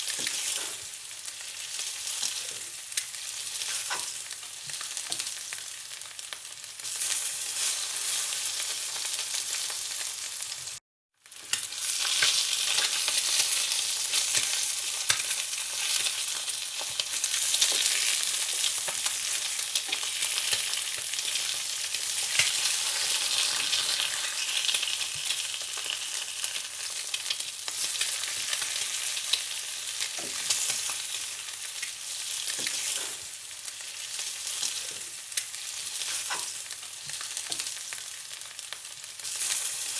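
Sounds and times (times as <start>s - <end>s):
food sizzling in hot oil: 0.0s - 39.9s.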